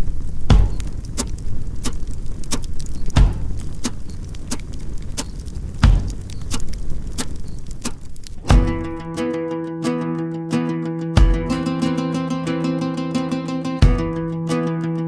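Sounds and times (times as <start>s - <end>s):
campfire crackling and popping: 0.0s - 15.0s
heavy low thumps: 0.4s - 1.4s, 3.1s - 4.0s, 5.3s - 7.1s, 8.4s - 9.1s, 11.2s - 11.7s, 13.8s - 14.4s.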